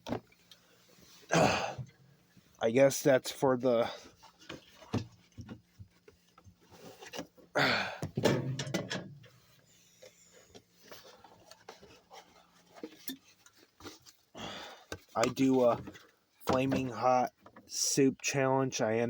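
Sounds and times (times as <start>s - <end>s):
cans and cardboard scraping: 9.4s - 14.3s.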